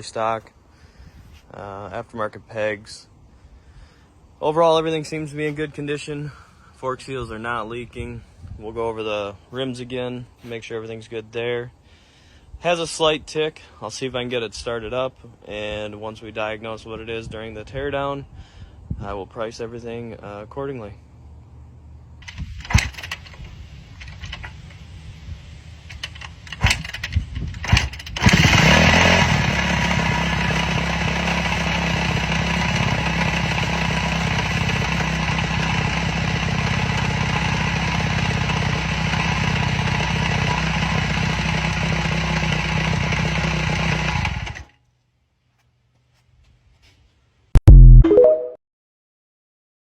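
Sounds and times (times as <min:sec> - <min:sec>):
motorcycle engine kick starting: 0:22.2 - 0:24.8, 0:25.8 - 0:36.2, 0:40.1 - 0:44.7
motorcycle engine running: 0:26.0 - 0:44.6
loud engine burst: 0:27.7 - 0:30.1.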